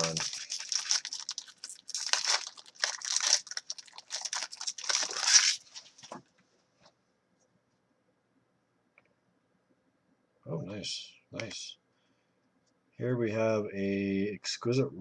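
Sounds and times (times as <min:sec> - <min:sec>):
wrapper tearing and crinkling: 0:00.0 - 0:06.2.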